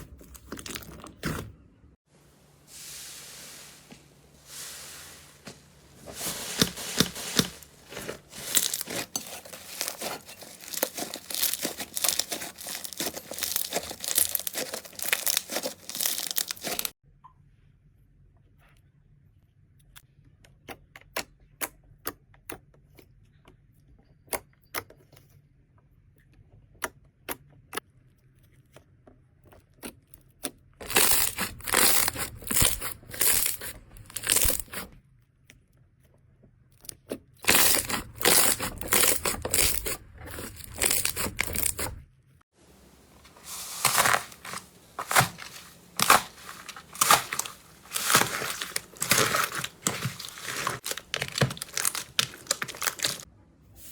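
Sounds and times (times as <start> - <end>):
slime crackling and popping: 6.2 - 16.9, 30.8 - 34.9, 37.4 - 42.0, 43.0 - 53.3.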